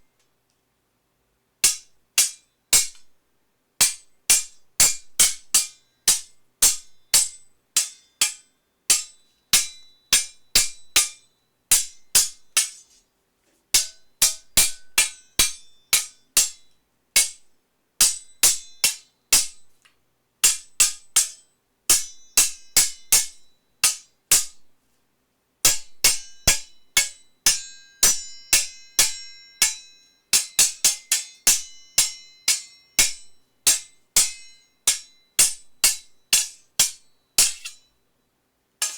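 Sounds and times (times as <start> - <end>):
sword blades clashing: 26.1 - 37.9.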